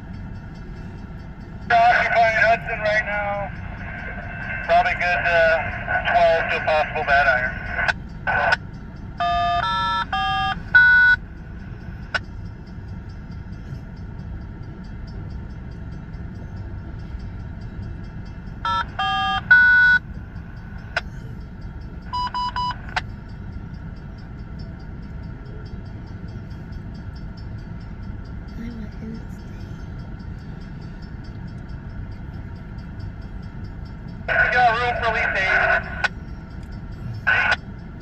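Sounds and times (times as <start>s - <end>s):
steady low rumble: 0.0s - 38.0s
electronic beep tones over radio: 1.7s - 8.6s, 9.2s - 11.2s, 18.7s - 20.0s, 22.1s - 23.0s, 34.3s - 36.1s, 37.1s - 37.6s.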